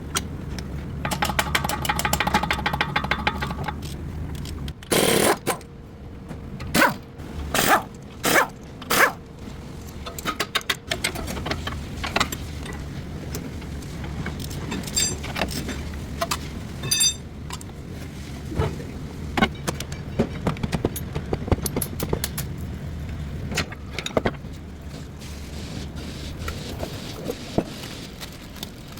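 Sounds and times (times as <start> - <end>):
rapid mechanical clicking: 1.0 - 5.7.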